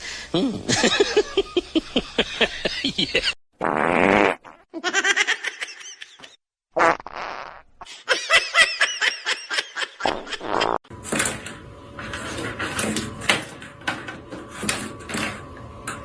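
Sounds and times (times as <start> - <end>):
person laughing: 0.3 - 3.4, 4.8 - 6.4, 7.8 - 10.8
buzzy fart sounds: 3.6 - 4.7, 6.8 - 7.8, 10.0 - 10.8.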